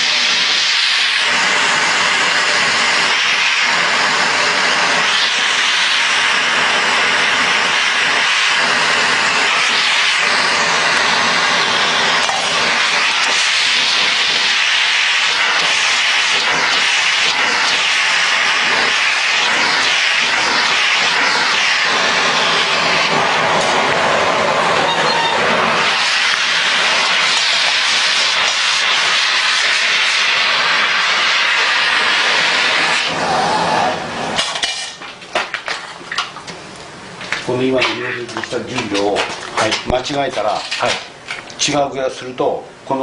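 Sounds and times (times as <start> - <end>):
gas torch hissing: 0.0 - 42.7.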